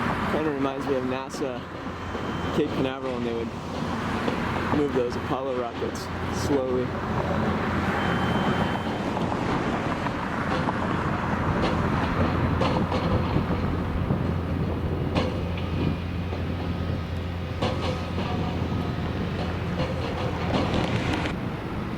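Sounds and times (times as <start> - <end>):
crane engine drone: 0.0 - 21.9
metallic clanks: 17.6 - 21.3.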